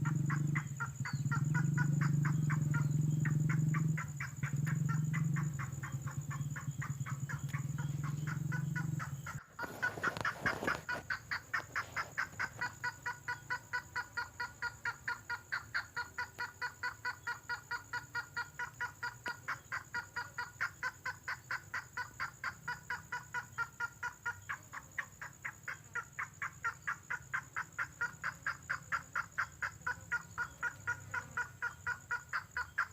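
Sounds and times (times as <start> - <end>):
bird call repeated notes: 0.0 - 24.7.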